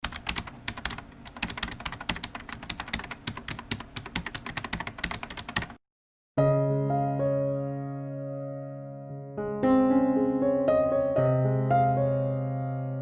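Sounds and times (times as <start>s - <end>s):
rapid keyboard typing: 0.0s - 5.8s.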